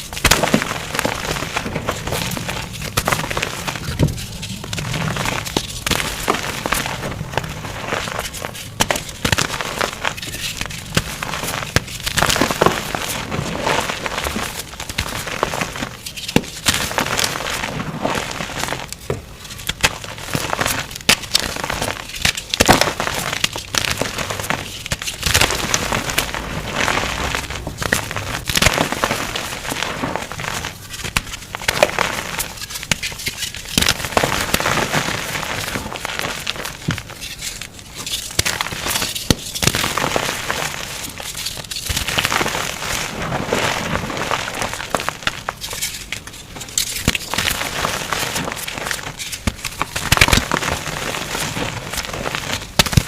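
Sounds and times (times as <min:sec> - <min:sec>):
chalk crunching: 0:00.0 - 0:53.0.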